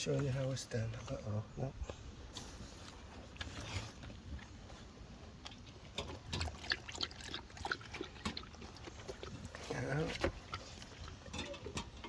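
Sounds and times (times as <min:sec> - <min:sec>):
dog splashing and slurping water: 0:03.2 - 0:12.0.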